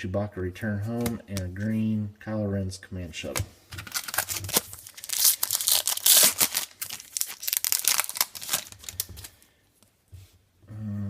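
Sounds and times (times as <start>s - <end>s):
wrapper tearing and crinkling: 3.8s - 9.3s.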